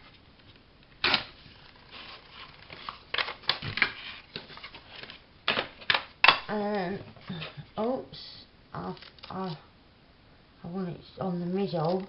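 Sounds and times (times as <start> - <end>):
paper rustling: 0.0 - 5.2
paper crinkling: 1.1 - 5.2, 8.9 - 9.6.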